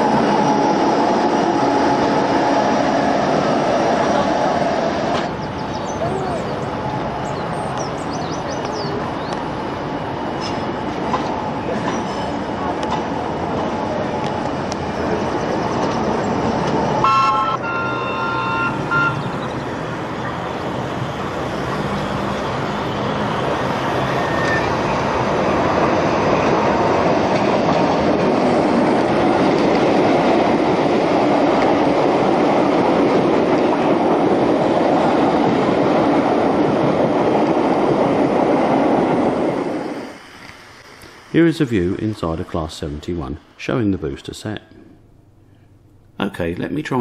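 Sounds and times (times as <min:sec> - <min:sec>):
electric locomotive rumbling: 0:00.0 - 0:47.0
locomotive whistle: 0:17.0 - 0:19.6, 0:23.9 - 0:25.0.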